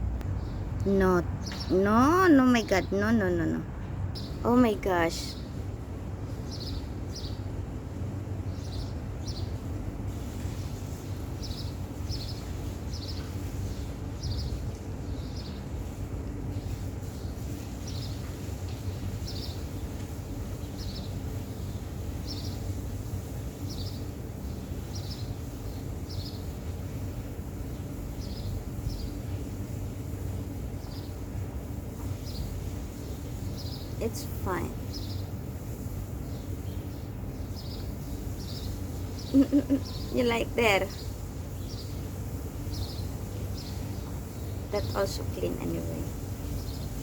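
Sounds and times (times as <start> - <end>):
steady low hum: 0.0 - 9.1, 26.9 - 47.0
small bird chirping: 4.2 - 5.5, 32.1 - 47.0.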